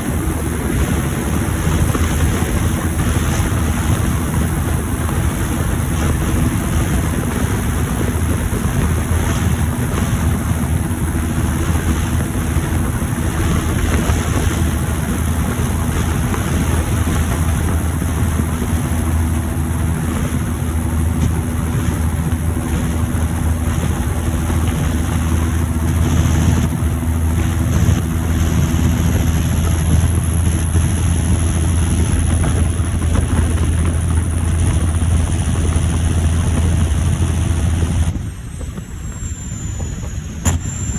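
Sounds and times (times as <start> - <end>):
tractor diesel engine running: 0.0 - 40.9
high turbo whistle: 37.8 - 40.9.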